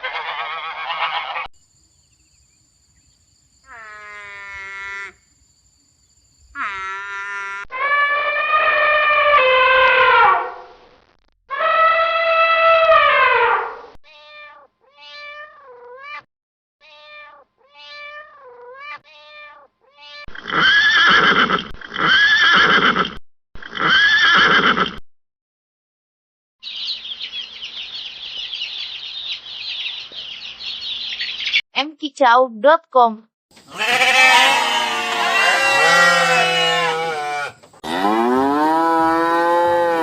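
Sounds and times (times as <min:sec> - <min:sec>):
loud rough animal calls: 0:33.6 - 0:40.0
long falling animal calls: 0:33.7 - 0:38.4.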